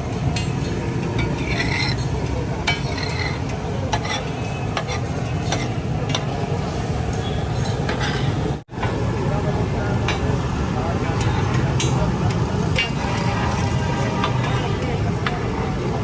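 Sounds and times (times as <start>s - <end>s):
metal spatula scraping a griddle: 0.4s - 6.3s.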